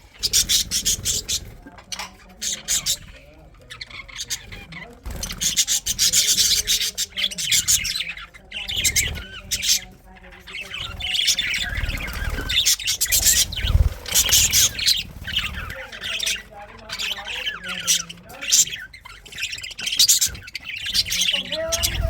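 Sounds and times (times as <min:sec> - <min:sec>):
budgerigars chirping and chattering: 0:00.0 - 0:22.0.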